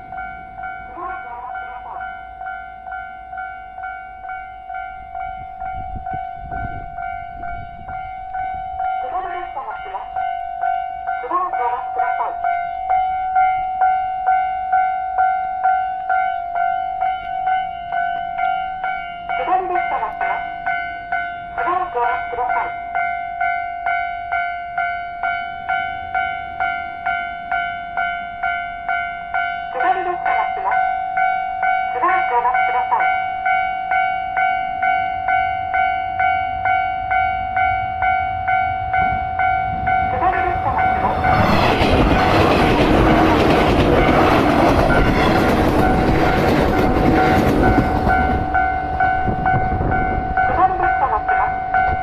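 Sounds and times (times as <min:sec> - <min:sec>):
electric train rumble: 0:00.0 - 0:52.0
level crossing warning bell: 0:00.0 - 0:52.0
train wheel knocks: 0:41.4 - 0:48.5.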